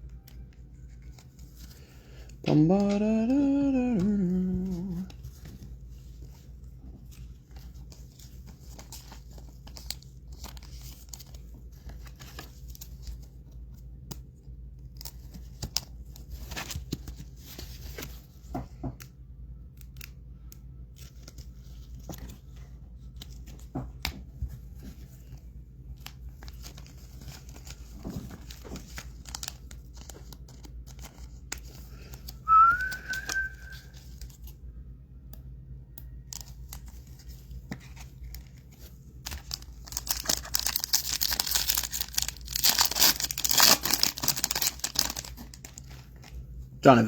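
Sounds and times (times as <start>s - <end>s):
cards shuffling: 0.1s - 6.5s, 20.9s - 34.5s, 36.3s - 46.4s
person humming: 2.5s - 5.2s, 32.5s - 33.8s
wrappers crinkling: 25.0s - 34.5s, 36.3s - 46.5s
foil packs tearing: 39.3s - 45.9s.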